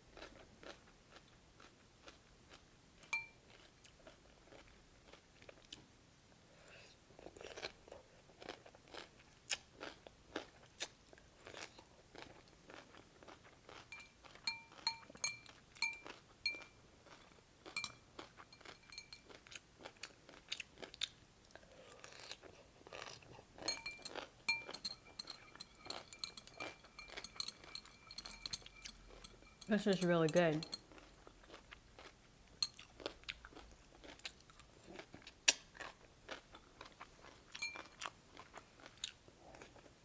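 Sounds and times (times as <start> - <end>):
crunching and chewing cucumber: 0.1 - 5.8, 7.1 - 29.5, 30.8 - 40.0.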